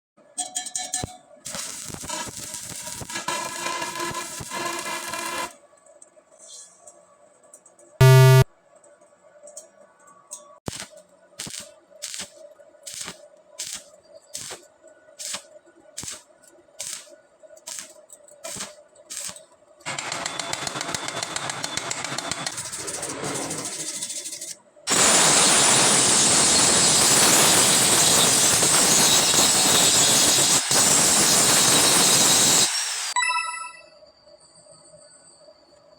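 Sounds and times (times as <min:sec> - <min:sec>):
electric arc welding crackle: 0:01.5 - 0:05.6, 0:10.7 - 0:21.4, 0:24.9 - 0:33.2.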